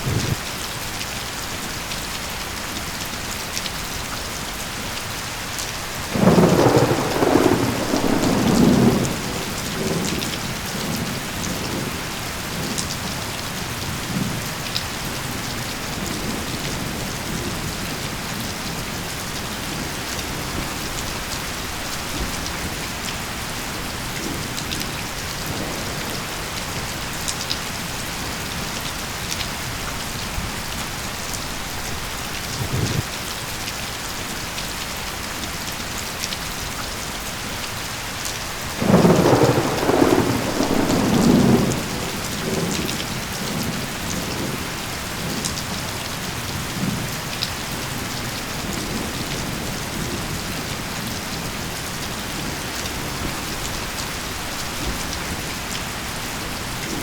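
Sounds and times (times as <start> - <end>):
thunder rumbling: 0.0 - 0.4, 6.1 - 13.2, 31.5 - 33.1, 38.8 - 45.8
steady rain falling: 0.0 - 57.0.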